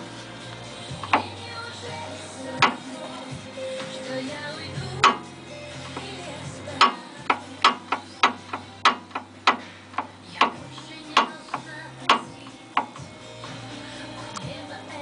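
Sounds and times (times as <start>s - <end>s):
low steady hum: 0.0s - 15.0s
car steering knocking: 6.8s - 13.1s.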